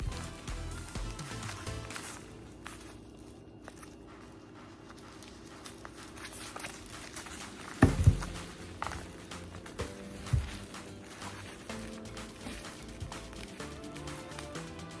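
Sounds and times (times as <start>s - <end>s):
handling noises: 0.0s - 15.0s.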